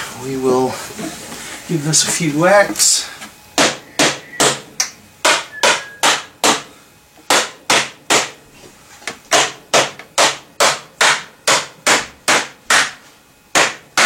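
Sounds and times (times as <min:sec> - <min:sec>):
whacks on pvc pipe fittings: 0:09.3 - 0:13.0.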